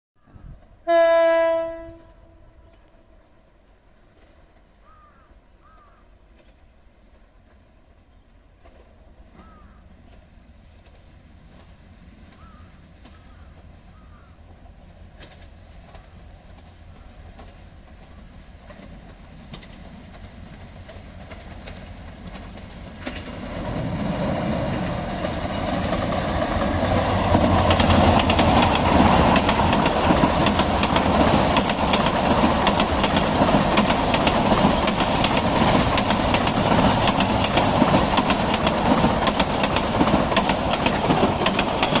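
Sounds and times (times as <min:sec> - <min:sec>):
train rumbling past: 0:00.2 - 0:42.0
wheels clattering over rail joints: 0:15.1 - 0:42.0.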